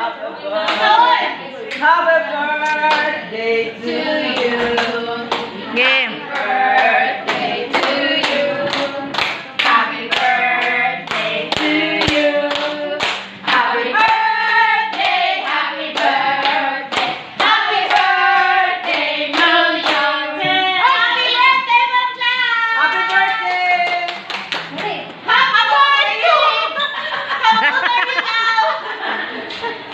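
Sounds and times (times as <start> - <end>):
voices singing together: 0.0 - 23.0
people clapping in rhythm: 2.5 - 3.2, 3.9 - 21.1, 22.8 - 25.2.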